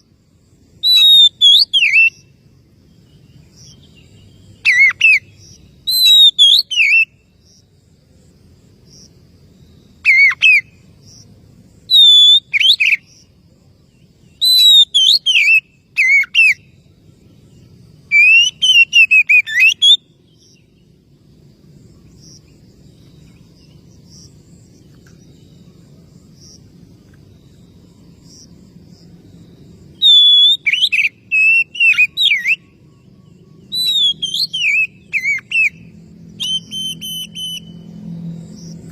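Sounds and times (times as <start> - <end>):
bird singing whistled phrases: 0.8 - 2.3, 4.6 - 5.3, 5.9 - 7.2, 10.1 - 10.7, 11.9 - 13.1, 14.3 - 16.8, 18.1 - 20.6, 30.0 - 32.8, 33.6 - 37.9.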